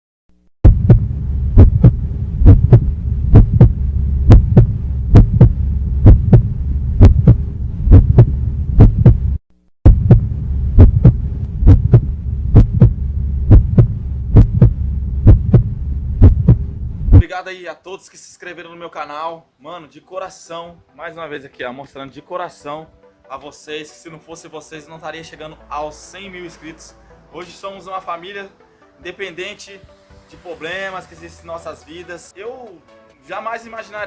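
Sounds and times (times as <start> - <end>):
bass-heavy beat: 0.6 - 17.3.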